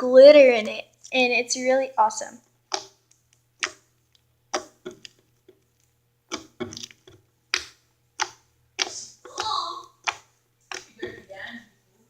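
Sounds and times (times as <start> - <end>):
slime wet clicks and pops: 2.7 - 3.9, 4.5 - 5.2, 6.3 - 11.0.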